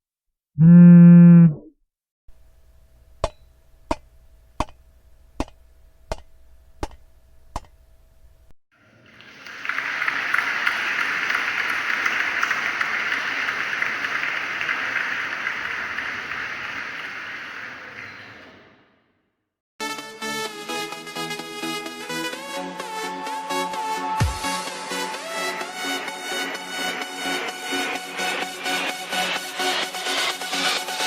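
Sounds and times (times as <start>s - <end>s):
axe chopping wood: 3.2s - 4.8s, 5.4s - 7.0s
crowd applauding: 9.0s - 18.6s.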